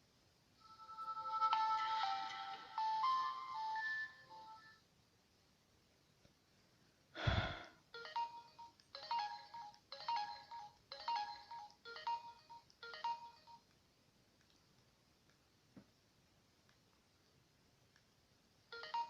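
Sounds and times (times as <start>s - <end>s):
mobile phone ringtone beeping: 0.6s - 4.8s, 8.0s - 13.6s, 18.7s - 19.0s.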